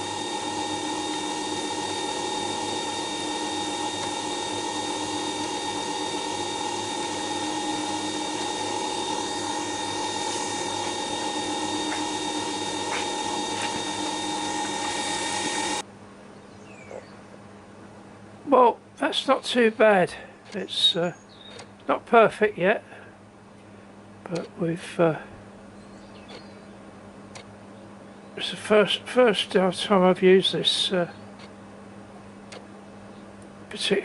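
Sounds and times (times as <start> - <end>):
grinder motor whine: 0.0 - 15.9.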